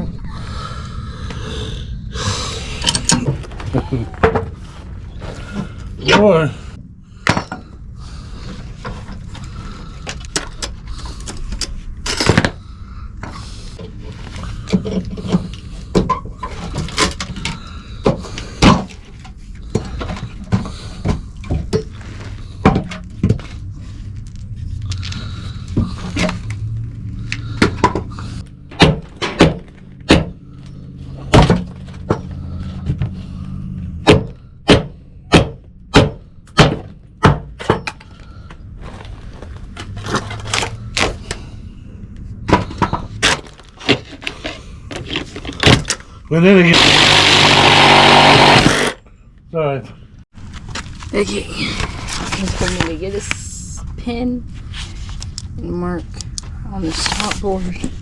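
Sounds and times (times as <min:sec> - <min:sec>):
steady low hum: 0:00.0 - 0:58.0
wood knocks and cracks: 0:28.7 - 0:30.4, 0:31.3 - 0:32.4, 0:34.0 - 0:38.0.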